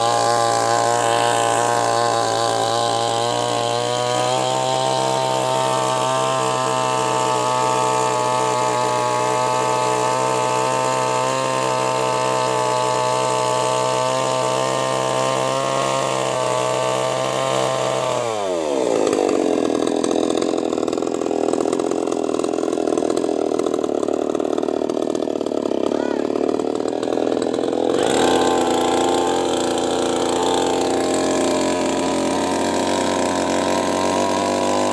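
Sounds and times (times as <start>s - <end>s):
chainsaw engine running: 0.0s - 34.9s.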